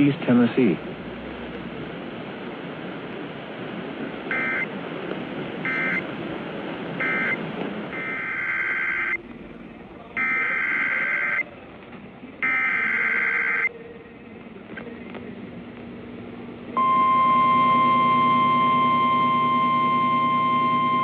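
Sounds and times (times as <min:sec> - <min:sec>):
radio hiss: 0:07.0 - 0:09.2, 0:10.2 - 0:11.4
digital data burst screech: 0:08.0 - 0:09.2.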